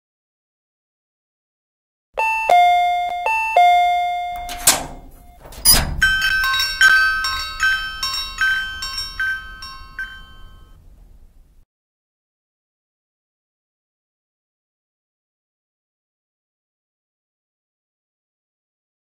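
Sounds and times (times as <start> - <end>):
bright bell ringing: 2.2 - 10.8
two-tone doorbell chime: 2.2 - 10.8.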